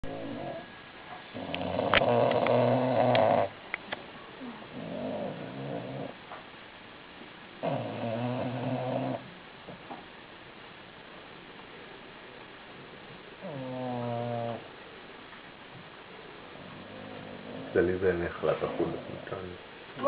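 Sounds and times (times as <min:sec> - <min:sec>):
dog snoring loudly: 0:00.0 - 0:00.7, 0:01.3 - 0:03.6, 0:04.4 - 0:06.2, 0:07.6 - 0:09.3, 0:13.4 - 0:14.7, 0:16.6 - 0:18.0, 0:18.6 - 0:19.5.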